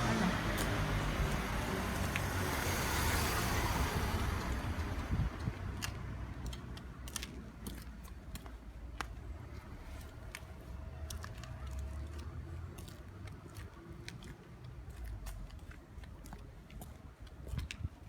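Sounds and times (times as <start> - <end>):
car passing by: 0.0 - 6.3.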